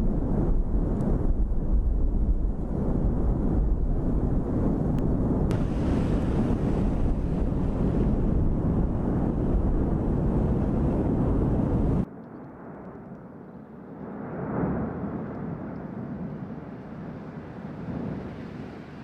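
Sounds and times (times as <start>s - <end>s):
wind buffeting microphone: 0.0s - 12.1s.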